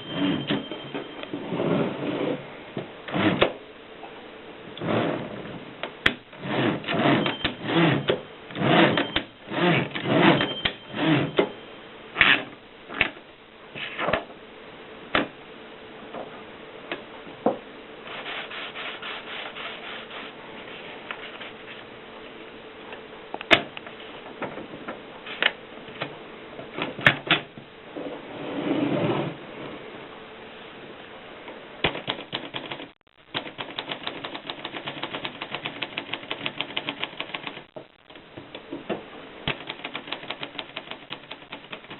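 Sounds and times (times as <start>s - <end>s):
manual typewriter clacking: 31.8s - 38.2s, 39.5s - 41.9s.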